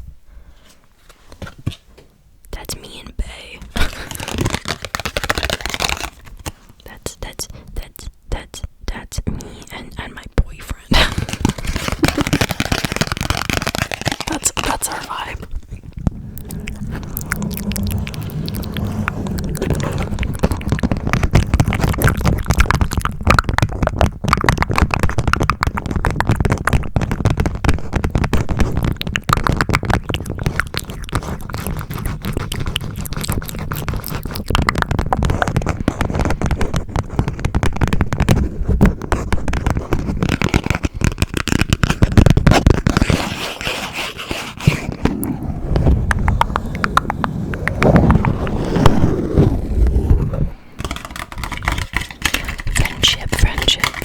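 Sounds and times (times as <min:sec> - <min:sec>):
wet mouth noises: 0:02.5 - 0:54.0
clicks and taps: 0:50.8 - 0:54.0.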